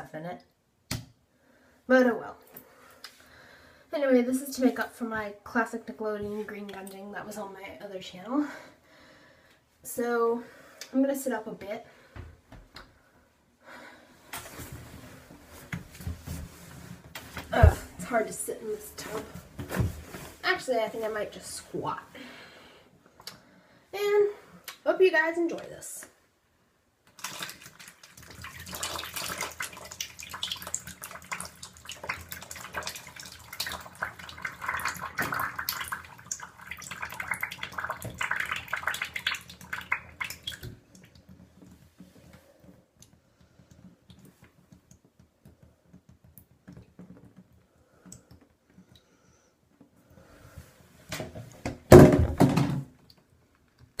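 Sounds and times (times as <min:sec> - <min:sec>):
slime pouring and splattering: 0:27.1 - 0:40.8.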